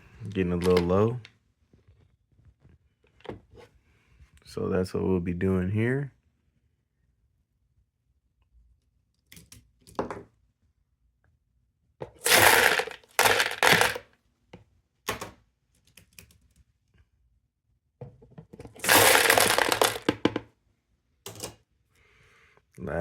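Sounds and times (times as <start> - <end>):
cartridges rattling into metal can: 12.2 - 14.0, 18.8 - 20.1.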